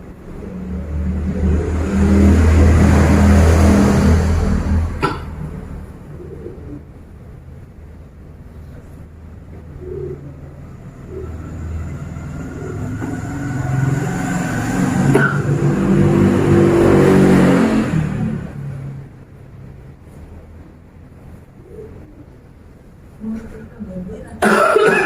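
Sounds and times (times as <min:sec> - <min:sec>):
vehicle engine passing by: 0:00.0 - 0:06.9, 0:09.8 - 0:19.8.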